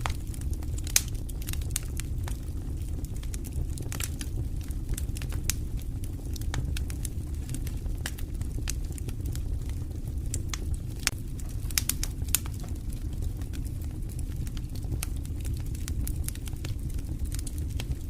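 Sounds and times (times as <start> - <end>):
steady low rumble: 0.0 - 18.0
wood crackling and popping: 0.0 - 18.0.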